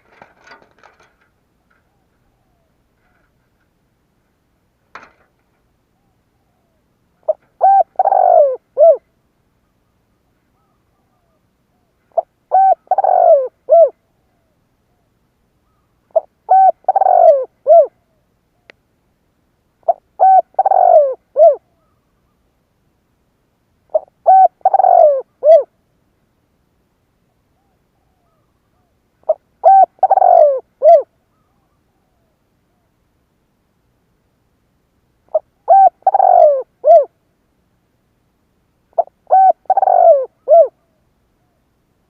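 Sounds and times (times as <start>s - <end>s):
dove cooing: 0.0s - 3.4s, 6.0s - 9.1s, 10.6s - 15.1s, 15.7s - 18.2s, 19.8s - 22.0s, 23.9s - 25.7s, 27.6s - 32.9s, 35.3s - 37.2s, 38.9s - 41.6s.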